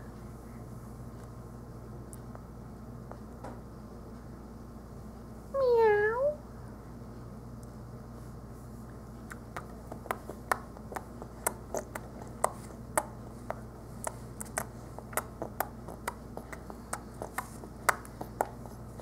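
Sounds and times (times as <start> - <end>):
faint steady hum: 0.0 - 19.0
baby smacking lips: 9.2 - 19.0.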